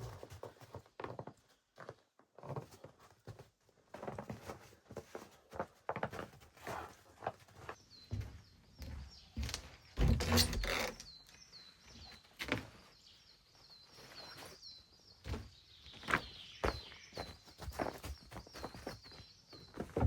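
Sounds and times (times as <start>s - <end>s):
footsteps crunching in snow: 15.3s - 19.9s.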